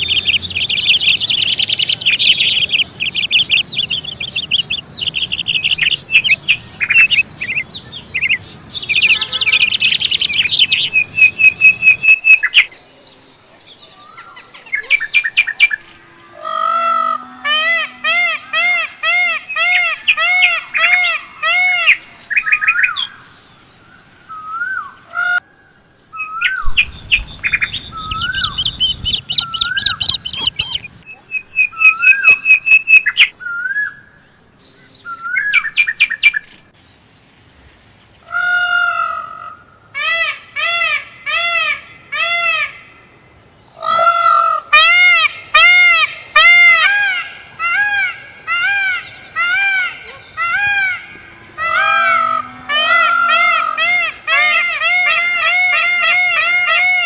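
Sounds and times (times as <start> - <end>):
birds calling: 0.0 - 57.0
low rustling: 25.9 - 31.0
high chirps: 26.2 - 33.3.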